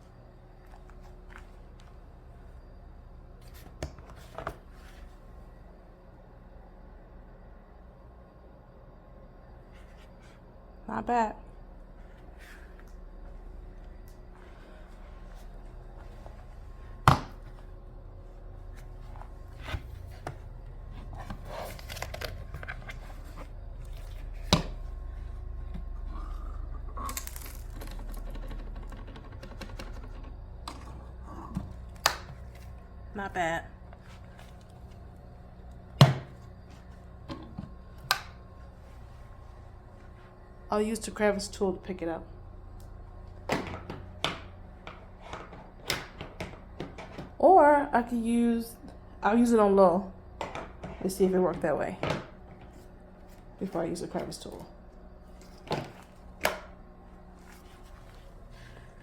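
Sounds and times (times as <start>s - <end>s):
low steady hum: 0.0s - 59.0s
rustling and crinkling: 12.0s - 24.5s, 57.2s - 59.0s.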